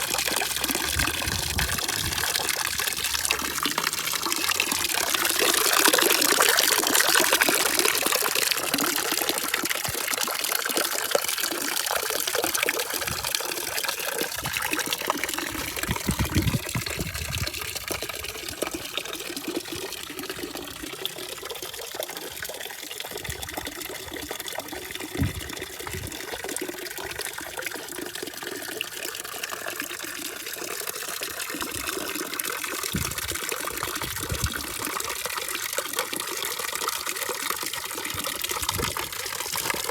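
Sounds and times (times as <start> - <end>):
water rushing and splashing: 0.0 - 27.5, 31.2 - 39.9
short deep thuds: 25.2 - 26.0.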